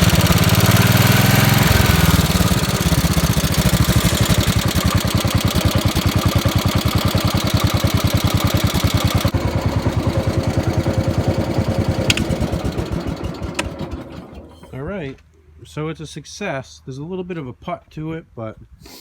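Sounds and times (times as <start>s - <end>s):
single-cylinder engine idling: 0.0s - 14.8s.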